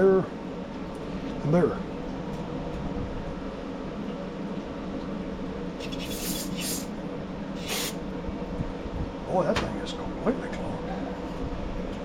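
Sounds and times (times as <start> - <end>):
low shop hum: 0.0 - 12.0
hissing spray through carburetor: 6.0 - 6.9, 7.6 - 8.0.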